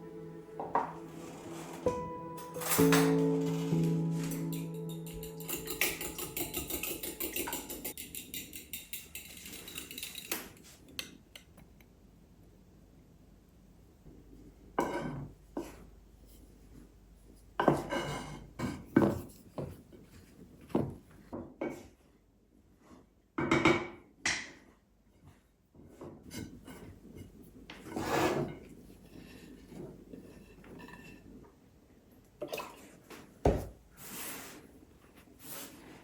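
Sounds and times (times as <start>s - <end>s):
utensils and dishes scraping on wood: 0.7s - 10.8s, 27.8s - 31.3s.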